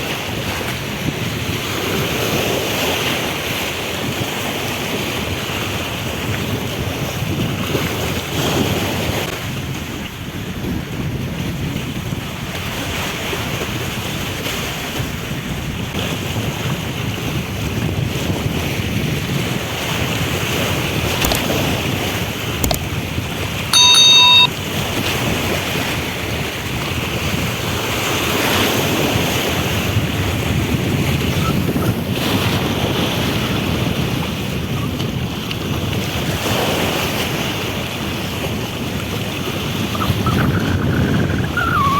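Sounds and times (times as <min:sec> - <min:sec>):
wind buffeting microphone: 0:00.0 - 0:23.7, 0:24.6 - 0:41.9
sea waves washing: 0:18.1 - 0:41.9
short electronic beep: 0:23.8 - 0:24.5.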